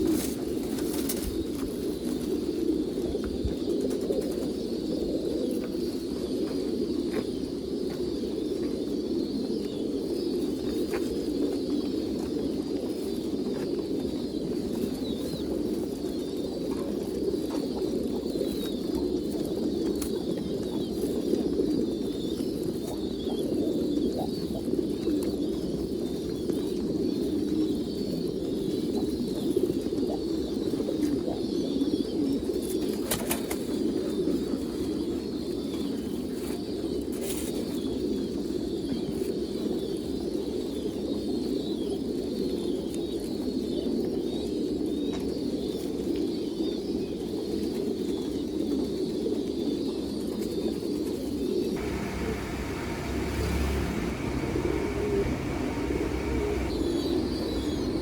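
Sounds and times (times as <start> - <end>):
pigeons cooing: 1.4 - 8.9, 51.8 - 58.0.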